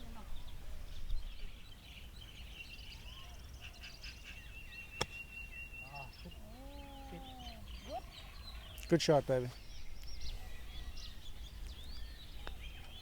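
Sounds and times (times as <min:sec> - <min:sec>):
birds chirping: 0:00.0 - 0:13.0
golf club striking ball: 0:05.0 - 0:05.3.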